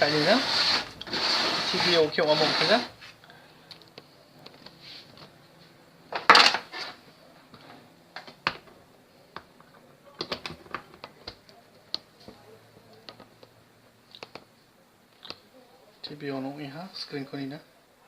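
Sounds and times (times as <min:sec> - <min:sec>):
clicks and taps: 0:09.3 - 0:14.5.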